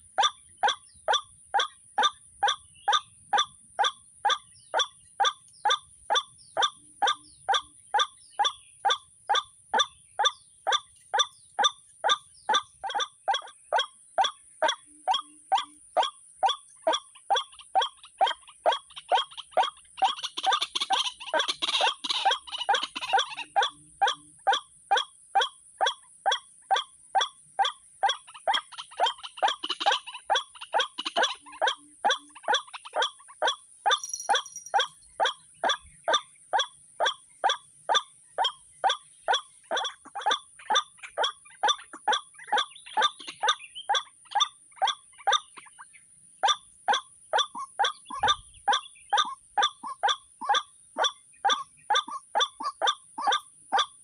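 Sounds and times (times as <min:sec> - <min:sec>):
waterhen calling: 0:00.0 - 0:54.0.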